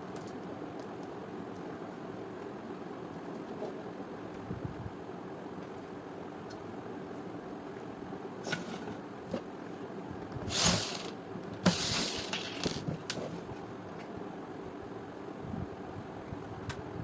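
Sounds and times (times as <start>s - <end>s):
steady background hum: 0.0s - 17.0s
loud scraping rasps: 10.5s - 11.1s.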